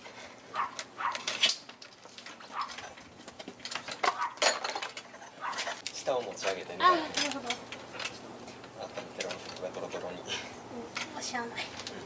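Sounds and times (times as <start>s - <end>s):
metal tools clinking: 0.0s - 8.2s, 8.9s - 10.1s.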